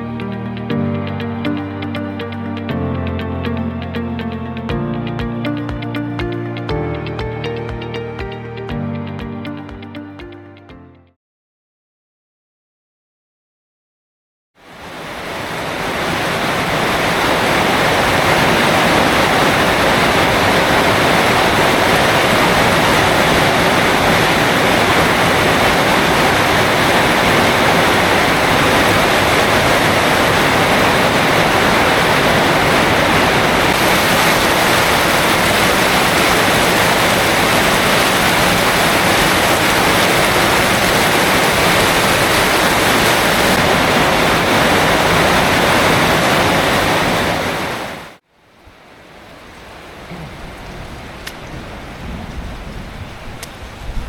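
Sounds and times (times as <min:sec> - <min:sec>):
heavy rain roaring: 0:14.6 - 0:48.2, 0:48.8 - 0:54.0.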